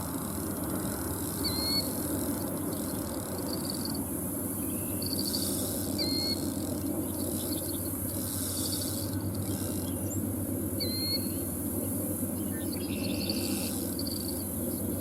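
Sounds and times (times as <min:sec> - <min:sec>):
insects trilling: 0:00.0 - 0:15.0
bird whistling: 0:10.8 - 0:11.4.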